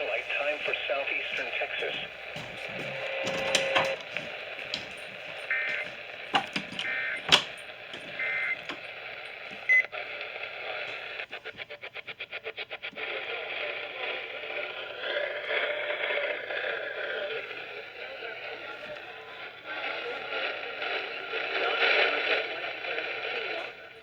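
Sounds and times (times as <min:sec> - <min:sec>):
hissy radio static: 0:00.0 - 0:24.0
clicks: 0:00.3 - 0:09.9
digital data bursts: 0:08.1 - 0:08.7.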